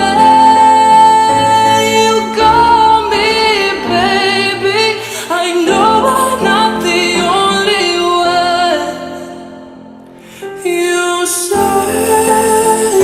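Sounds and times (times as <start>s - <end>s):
woman singing wordlessly: 0.0s - 9.2s
piano accompaniment: 0.0s - 13.0s.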